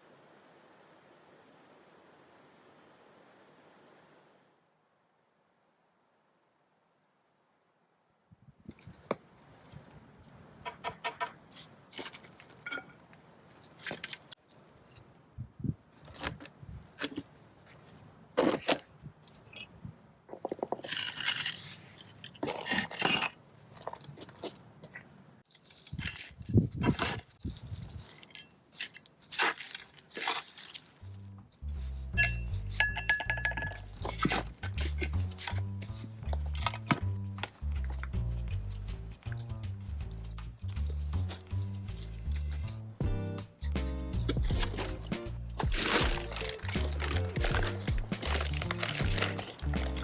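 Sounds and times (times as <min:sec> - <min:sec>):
hands rustling and scraping: 0:08.7 - 0:10.6, 0:11.4 - 0:15.2, 0:15.8 - 0:50.0.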